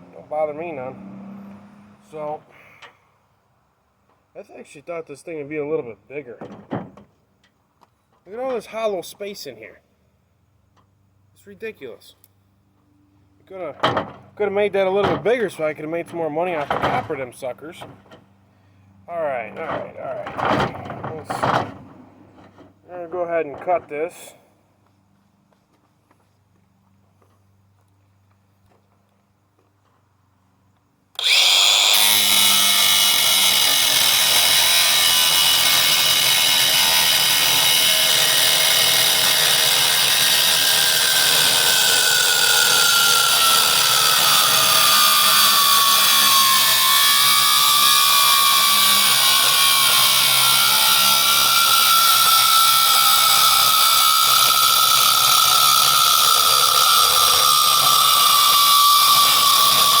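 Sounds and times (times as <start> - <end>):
angle grinder cutting steel: 31.2 - 60.0.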